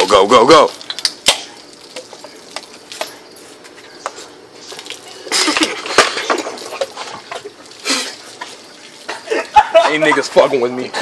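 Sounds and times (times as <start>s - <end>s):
beer fizzing and splashing: 0.0s - 11.0s.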